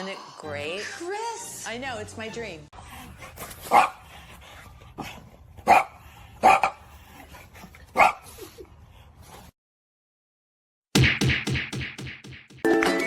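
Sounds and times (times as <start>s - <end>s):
dog barking: 3.7s - 4.0s, 5.6s - 6.8s, 8.0s - 8.2s.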